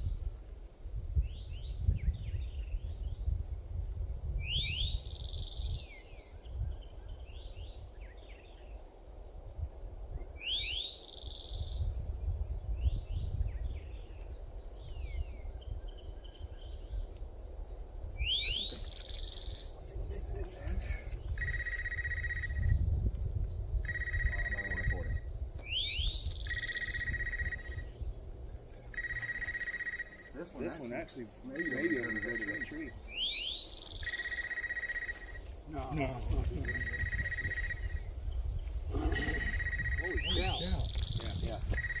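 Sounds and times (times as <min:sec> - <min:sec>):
songbird singing: 0:00.0 - 0:42.0
bird chirps: 0:04.4 - 0:08.9, 0:10.3 - 0:12.0, 0:18.2 - 0:20.0, 0:21.0 - 0:42.0.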